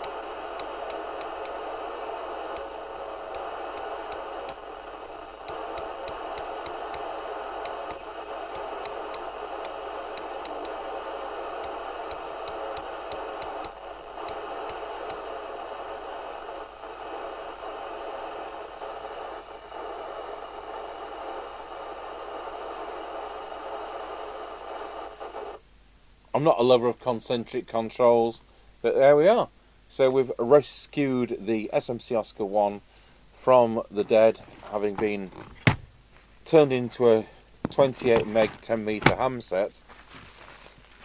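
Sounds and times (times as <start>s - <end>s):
radio receiver hissing: 0.0s - 25.6s, 33.4s - 39.9s.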